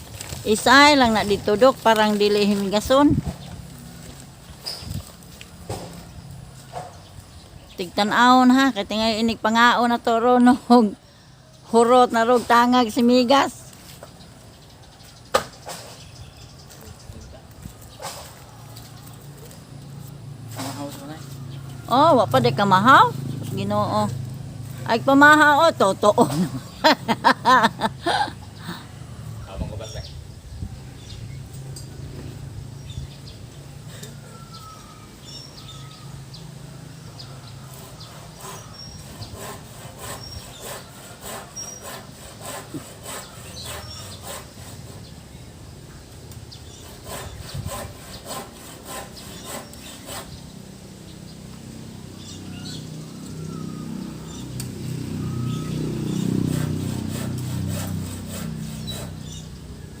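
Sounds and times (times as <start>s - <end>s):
saw scraping through wood: 17.9s - 27.8s, 37.4s - 45.3s, 46.6s - 50.4s, 56.1s - 59.6s.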